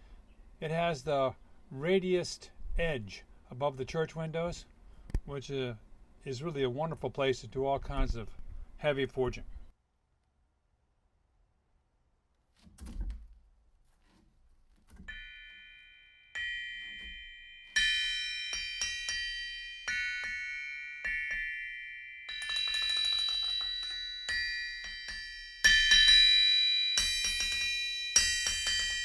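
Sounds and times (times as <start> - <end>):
hammer ringing on anvil: 15.1 - 29.0.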